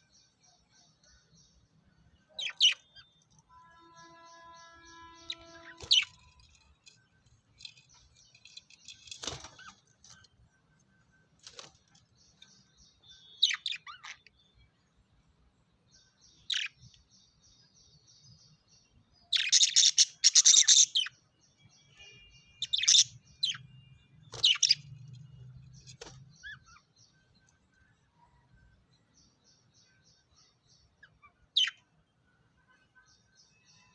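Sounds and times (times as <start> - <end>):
parrots chirping: 5.1 - 6.9, 19.3 - 21.1.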